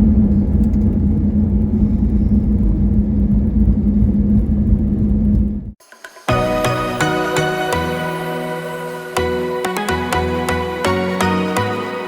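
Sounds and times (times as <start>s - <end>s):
airliner cabin engine rumble: 0.0s - 5.7s.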